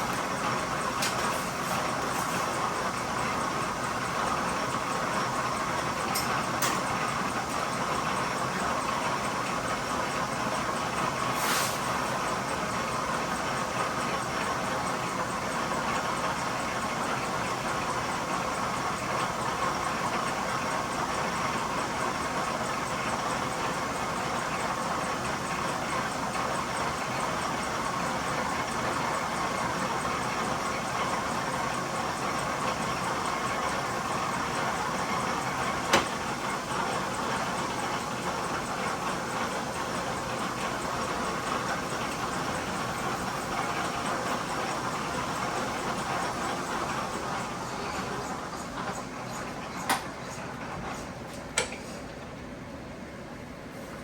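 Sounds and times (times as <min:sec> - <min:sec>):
brief hiss: 0:11.3 - 0:11.9.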